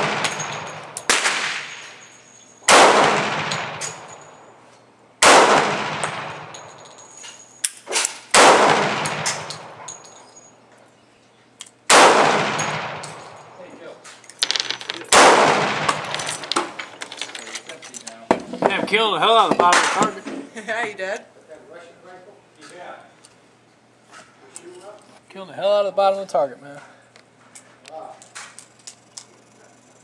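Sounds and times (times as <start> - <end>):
handgun shots echoing: 0.0 - 2.0, 2.7 - 4.1, 7.9 - 10.0, 11.9 - 13.5, 14.4 - 16.8.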